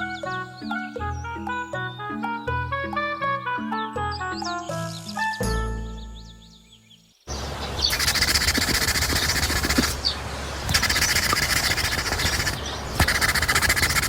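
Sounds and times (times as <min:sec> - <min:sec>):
animal buzzing trills: 0:07.8 - 0:10.1, 0:10.7 - 0:14.0.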